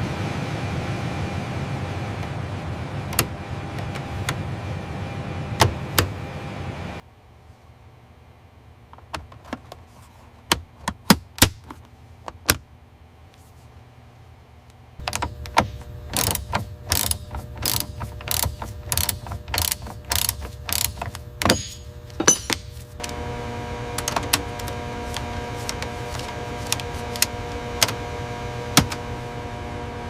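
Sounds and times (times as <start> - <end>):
steady machine hum: 0.0 - 9.0, 12.7 - 30.0
sharp mechanical clanks: 15.0 - 22.8.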